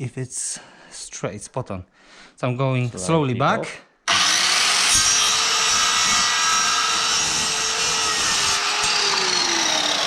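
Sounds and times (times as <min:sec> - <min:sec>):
power saw cutting wood: 0:04.1 - 0:10.0.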